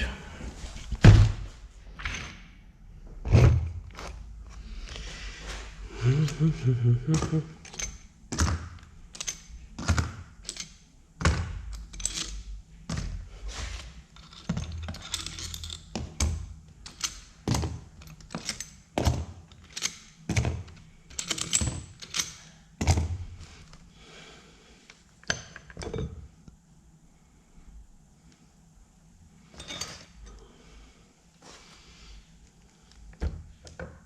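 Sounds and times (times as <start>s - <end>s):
metal engine parts clinking: 7.6s - 8.2s, 9.1s - 9.6s, 11.7s - 13.2s, 14.1s - 18.9s, 21.1s - 22.6s, 29.5s - 30.4s.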